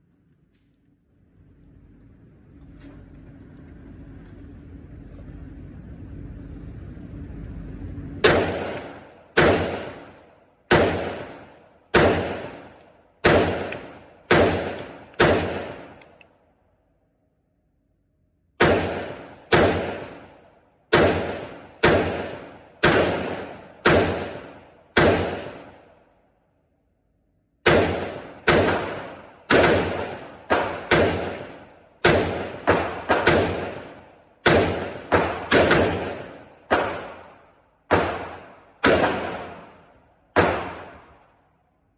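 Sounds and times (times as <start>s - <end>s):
rifle shots with echo: 8.2s - 16.3s, 18.6s - 26.1s, 27.6s - 41.5s.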